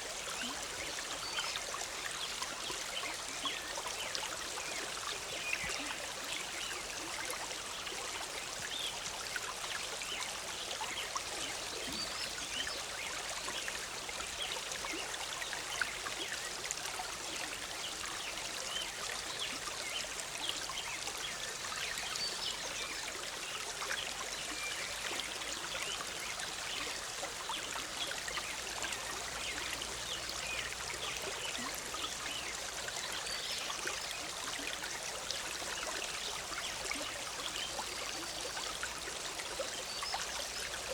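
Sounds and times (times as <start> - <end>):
stream bubbling and trickling: 0.0 - 40.9.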